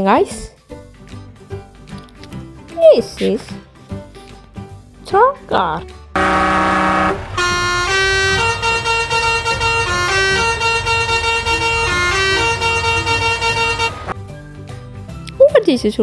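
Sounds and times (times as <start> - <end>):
toy truck horn honk: 6.2 - 14.2.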